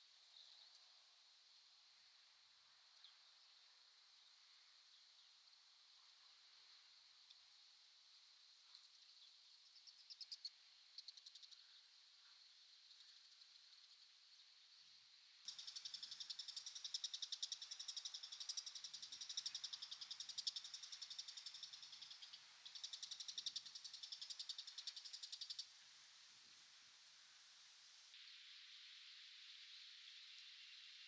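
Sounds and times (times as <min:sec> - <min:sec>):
distant insects hissing: 0:15.5 - 0:31.0.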